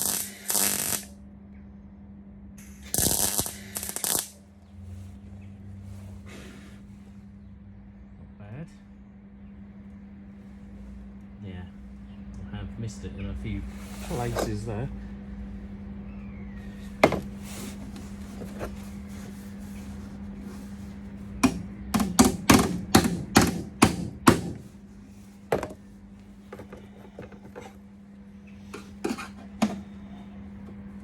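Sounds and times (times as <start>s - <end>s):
low hum: 0.8s - 31.0s
hammer blows on sheet steel: 21.4s - 24.7s.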